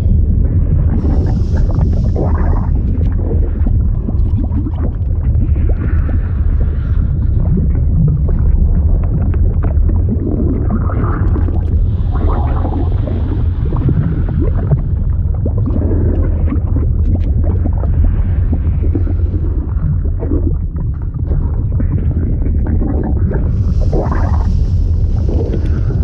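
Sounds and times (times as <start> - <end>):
deep steady rumble: 0.0 - 26.0
water gurgling and bubbling: 0.0 - 26.0.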